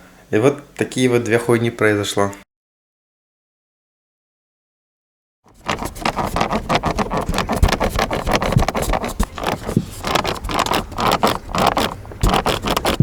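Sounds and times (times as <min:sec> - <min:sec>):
dashboard creaking and rattling: 0:05.5 - 0:13.0.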